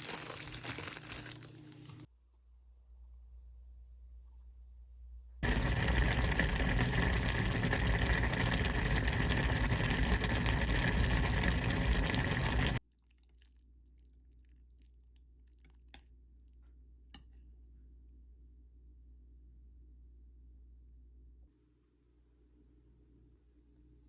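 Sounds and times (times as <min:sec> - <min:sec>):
running water rushing: 0:05.4 - 0:12.8.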